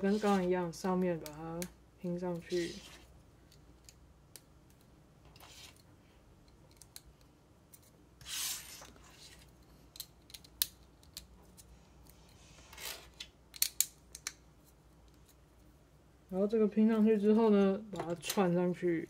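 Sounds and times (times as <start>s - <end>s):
rustling scrapes: 2.4s - 3.1s, 8.2s - 9.5s.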